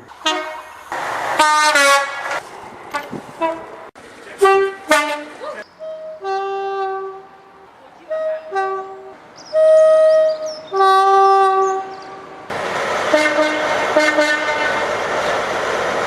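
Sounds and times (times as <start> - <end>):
two-tone locomotive horn: 0.2 - 12.5, 13.1 - 15.0
steady rushing noise: 0.7 - 4.3, 12.4 - 16.0.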